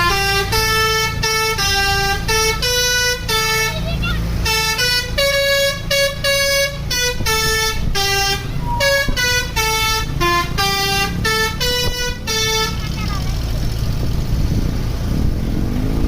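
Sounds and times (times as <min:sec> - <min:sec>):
bus horn playing melody: 0:00.0 - 0:13.2
bus engine rumble: 0:00.0 - 0:16.0.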